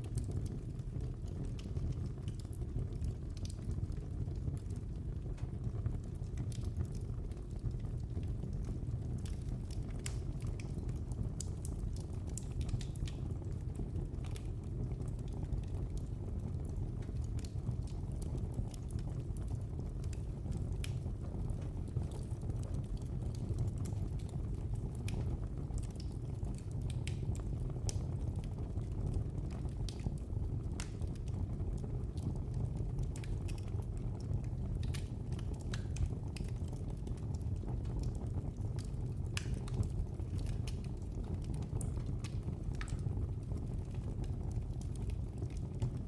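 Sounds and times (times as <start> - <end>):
fire popping and snapping: 0.0 - 46.0
wood fire crackling: 0.0 - 46.0.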